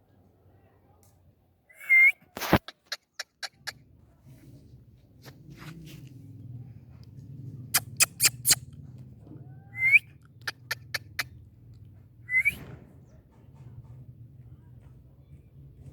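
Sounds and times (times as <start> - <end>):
sharp clicks: 7.8 - 8.6
parakeet whistled chirps: 9.8 - 10.7, 12.3 - 12.6.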